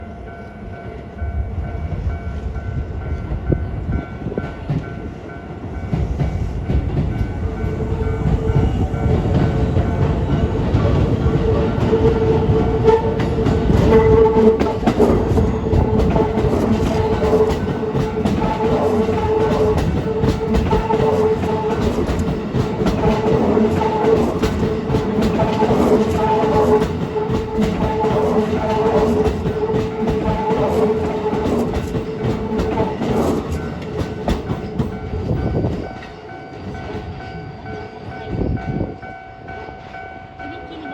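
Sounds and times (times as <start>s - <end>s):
electric train rumble: 0.0s - 40.9s
level-crossing warning bell: 0.0s - 40.9s
train wheels knocking on rail joints: 3.4s - 37.2s
level crossing warning bell: 34.7s - 40.9s.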